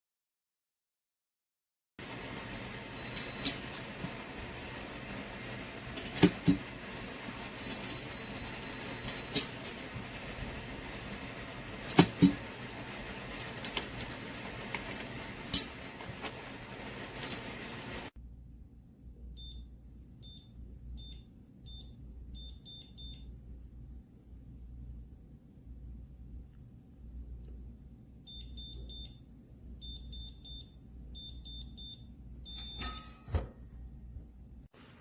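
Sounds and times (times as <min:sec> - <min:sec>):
keypad beeping: 0:03.0 - 0:03.8, 0:07.6 - 0:09.8.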